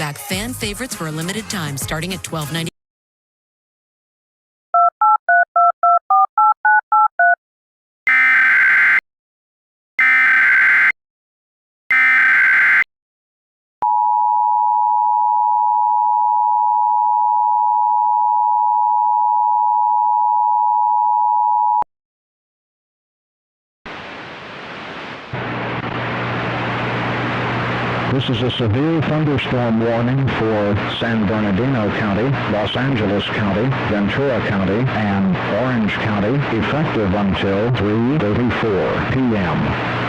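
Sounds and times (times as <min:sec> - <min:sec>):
two-tone attention signal: 0:08.1 - 0:09.0, 0:10.0 - 0:10.9, 0:11.9 - 0:12.9.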